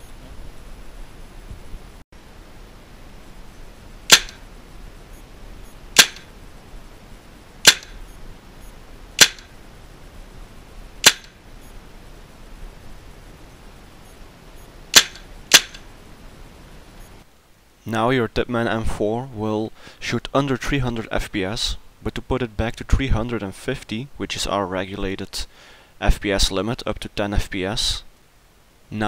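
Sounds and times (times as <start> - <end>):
airsoft rifle single shots: 4.1 - 4.4, 6.0 - 6.3, 7.6 - 8.0, 9.2 - 9.5, 11.0 - 11.4, 14.9 - 15.8.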